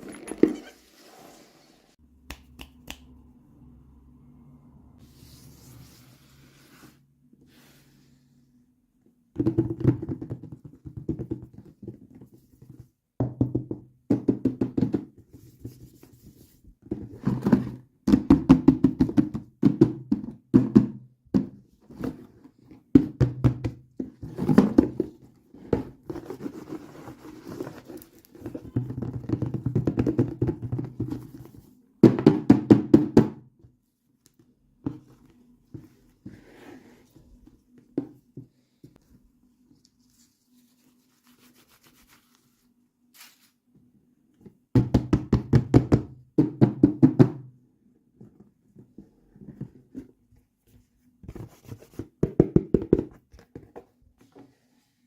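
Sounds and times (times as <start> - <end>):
hands knocking on toy packaging: 32.0 - 33.5, 44.8 - 47.5, 52.2 - 53.7.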